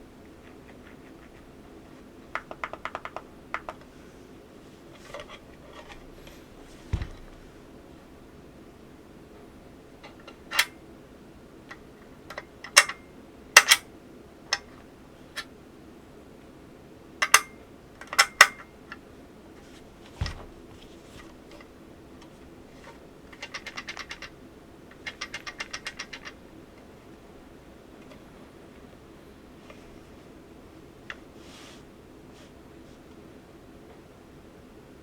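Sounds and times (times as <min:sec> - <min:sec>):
sharp clicks and knocks: 0:02.3 - 0:03.9, 0:25.0 - 0:26.4
dull thud: 0:06.0 - 0:07.7, 0:20.1 - 0:20.8.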